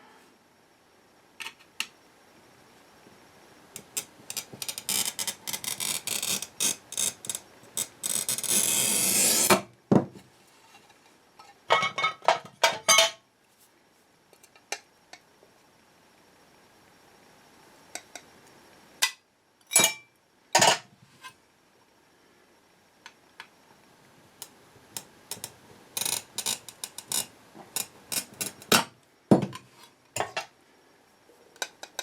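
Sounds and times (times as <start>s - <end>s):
glass being scored: 19.0s - 20.8s
ringing glass clinks: 19.7s - 20.1s.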